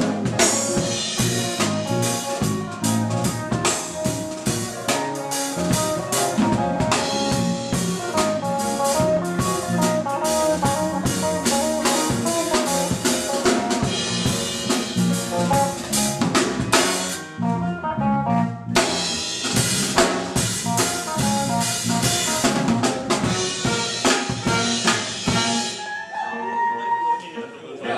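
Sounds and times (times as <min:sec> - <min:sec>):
drum rimshots: 0:00.0 - 0:17.3, 0:18.8 - 0:25.9
live reggae band playing: 0:00.0 - 0:27.2
brass playing: 0:00.0 - 0:27.6.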